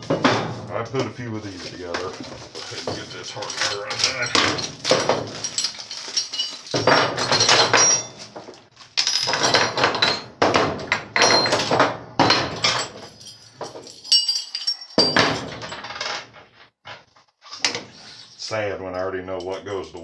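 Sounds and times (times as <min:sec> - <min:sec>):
metal parts knocking and clinking: 0:01.6 - 0:16.3, 0:19.4 - 0:20.0.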